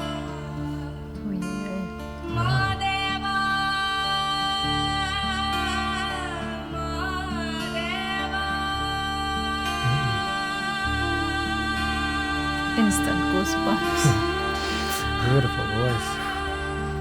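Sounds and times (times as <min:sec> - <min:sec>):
plucked string accompaniment: 0:00.0 - 0:17.0
woman singing folk song: 0:00.0 - 0:17.0.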